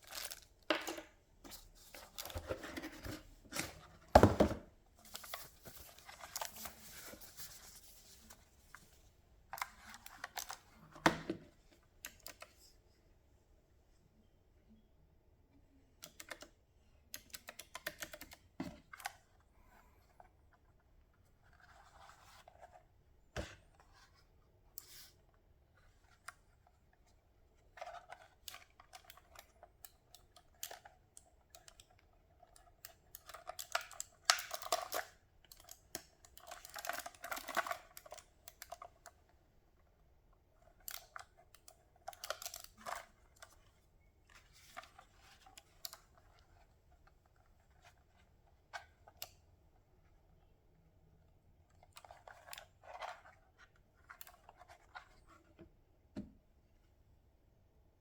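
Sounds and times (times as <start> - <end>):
soft rustling: 4.9 - 9.2.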